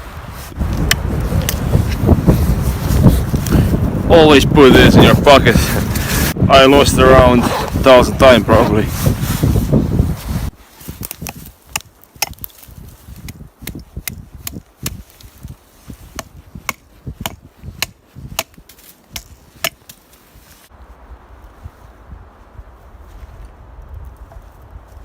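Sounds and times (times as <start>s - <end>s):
blade chopping wood: 11.0s - 12.6s, 16.1s - 20.0s.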